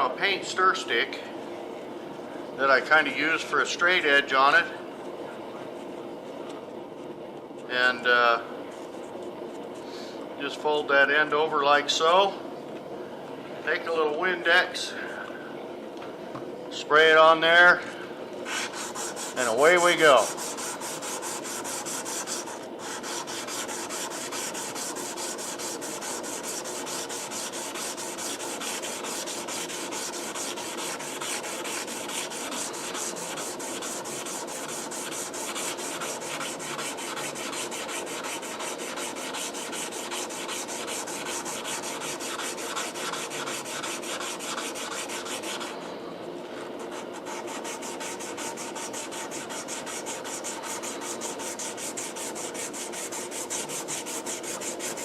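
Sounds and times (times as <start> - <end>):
sandpaper rubbing on steel blade: 18.5 - 45.8, 46.8 - 55.0.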